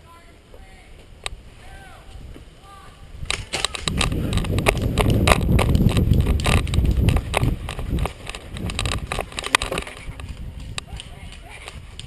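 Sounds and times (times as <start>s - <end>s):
microphone handling rumble: 1.1s - 12.0s
gear rattling: 3.3s - 12.0s
running footfalls: 3.4s - 12.0s.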